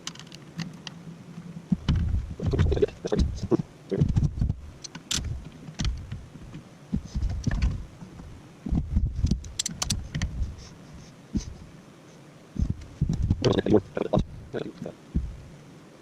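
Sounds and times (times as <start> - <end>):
metal parts and tools clicking: 0.0 - 0.8, 9.4 - 10.2.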